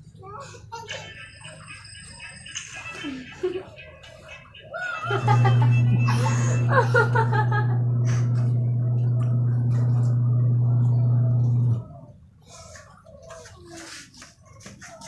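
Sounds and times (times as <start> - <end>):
loud low buzzing hum: 5.2 - 12.0.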